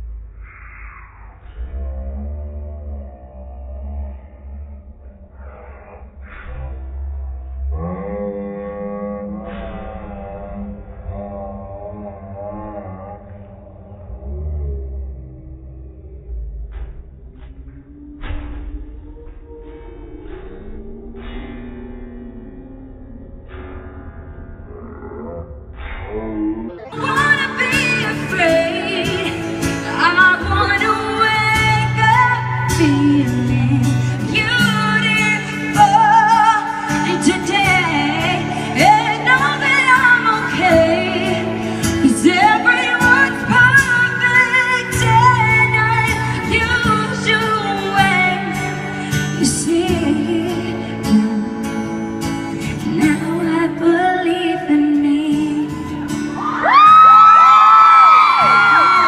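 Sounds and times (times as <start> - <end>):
woman singing: 26.9 - 52.0, 52.6 - 56.1.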